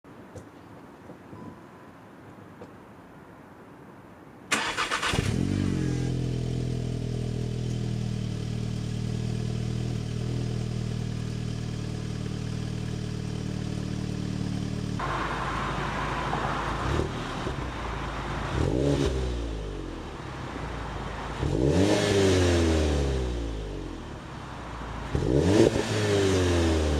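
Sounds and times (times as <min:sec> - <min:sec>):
car engine starter cranking: 0:04.5 - 0:05.6
car engine idling: 0:04.5 - 0:21.9
car engine revving: 0:04.5 - 0:26.9.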